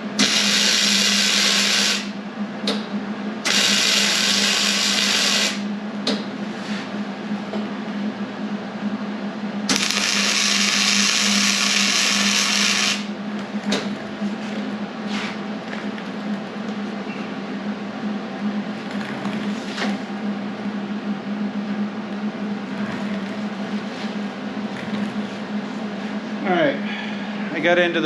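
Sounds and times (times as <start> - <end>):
steady low hum: 0.0 - 28.0.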